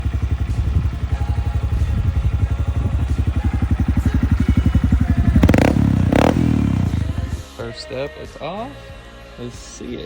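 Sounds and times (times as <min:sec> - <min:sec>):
motorcycle engine idling: 0:00.0 - 0:07.9.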